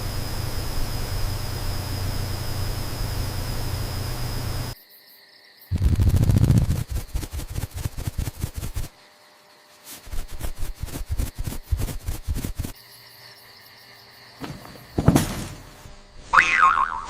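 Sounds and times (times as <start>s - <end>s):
heavy knocking and rattling: 14.4s - 15.8s.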